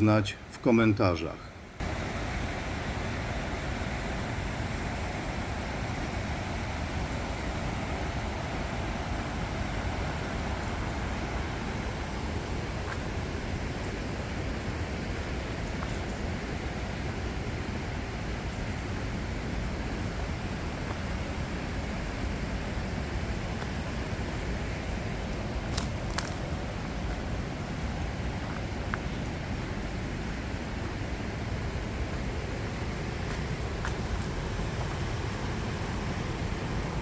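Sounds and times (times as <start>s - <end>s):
river rushing: 0.8s - 37.0s.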